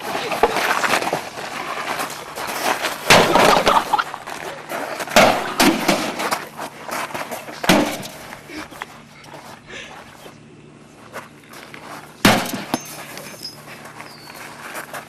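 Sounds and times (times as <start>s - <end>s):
noisy clatter: 0.0s - 8.4s
heavy impacts: 0.0s - 8.5s, 12.2s - 13.2s
loud crashing and banging: 3.0s - 4.0s, 5.1s - 6.4s.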